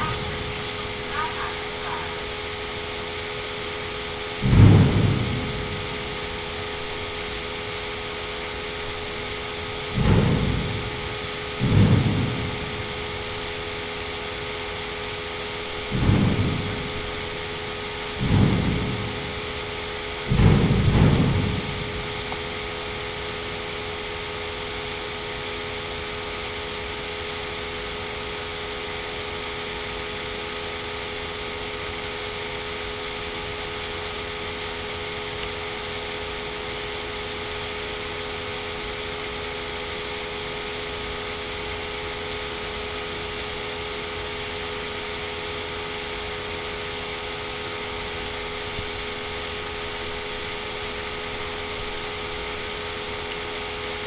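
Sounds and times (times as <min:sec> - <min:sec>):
faint constant hum: 0:00.0 - 0:54.0.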